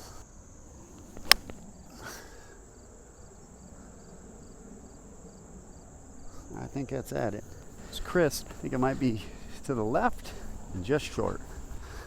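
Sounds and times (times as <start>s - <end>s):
insects trilling: 0.0s - 12.0s
golf club striking ball: 1.0s - 1.6s.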